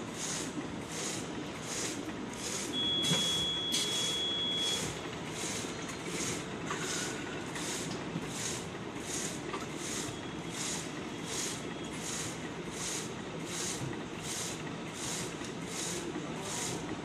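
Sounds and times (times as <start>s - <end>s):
machine running in a cycle: 0.0s - 17.0s
high steady beep: 2.7s - 4.9s.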